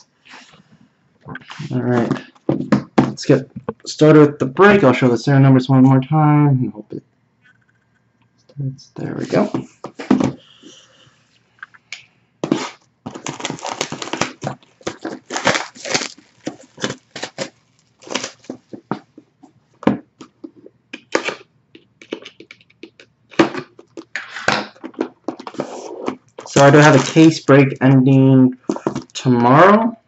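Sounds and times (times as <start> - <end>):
wrapper tearing and crinkling: 12.4 - 18.9, 25.4 - 27.8
cardboard handling: 12.4 - 19.2.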